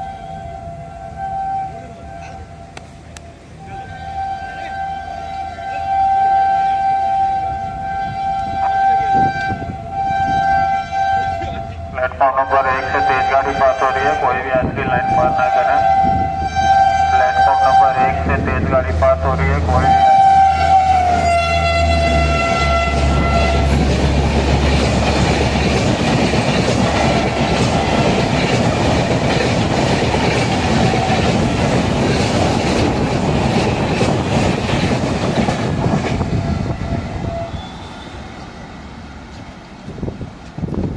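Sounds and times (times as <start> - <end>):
locomotive horn: 0.0 - 23.9, 36.2 - 38.3
train wheels on rails: 6.7 - 40.9.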